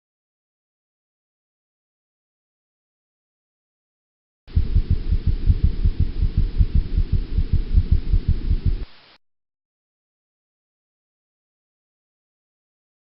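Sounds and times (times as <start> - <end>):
muffled heartbeat thumps: 4.5 - 8.9.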